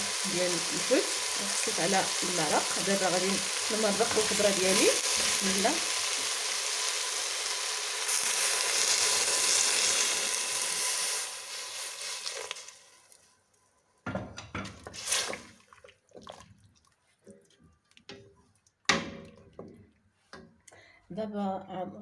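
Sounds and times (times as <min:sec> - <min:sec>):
liquid hissing in hot pot: 0:00.0 - 0:13.2, 0:15.0 - 0:15.5.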